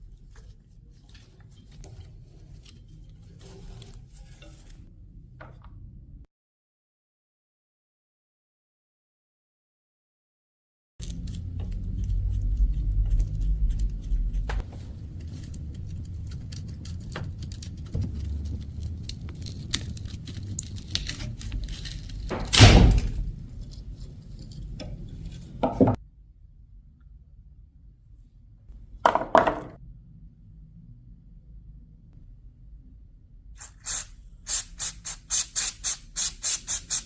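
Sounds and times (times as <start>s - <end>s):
low rumble: 11.0s - 24.8s
thunk: 22.3s - 23.3s
loud knock: 22.3s - 23.4s.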